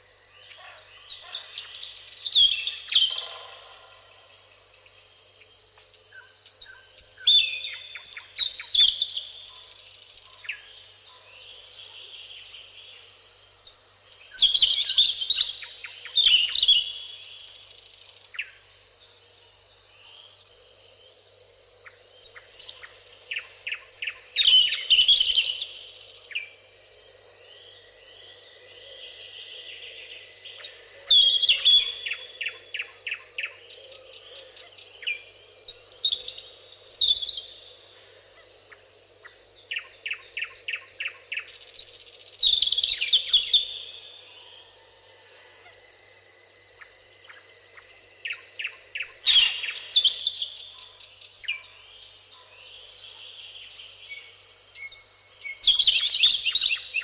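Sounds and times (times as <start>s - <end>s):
birds chirping and trilling: 0.2s - 11.8s, 45.4s - 57.0s
loud bird song phrase: 42.4s - 57.0s.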